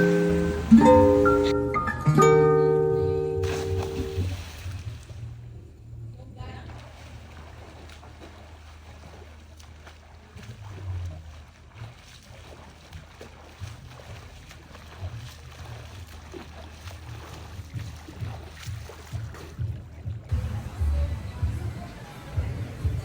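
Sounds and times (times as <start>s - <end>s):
low engine-like drone: 0.0s - 1.7s, 3.0s - 9.6s, 20.3s - 23.0s.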